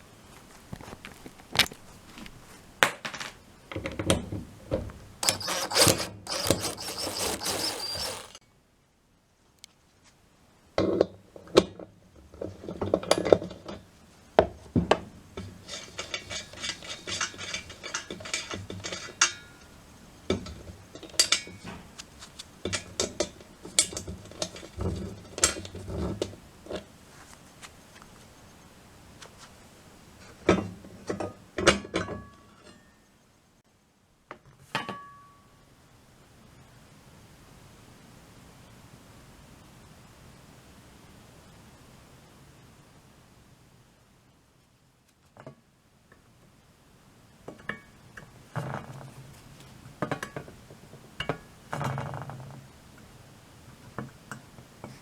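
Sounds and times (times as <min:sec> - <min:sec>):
metal parts clicking and clattering: 0:05.2 - 0:08.4.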